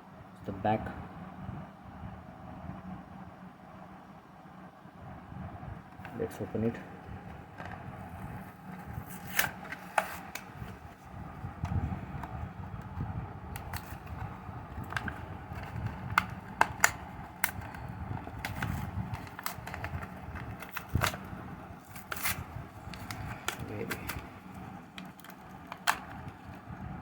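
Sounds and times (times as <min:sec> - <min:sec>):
plastic packaging crinkling: 0:07.6 - 0:12.3, 0:13.6 - 0:26.7
plastic clicks and snaps: 0:21.9 - 0:26.5.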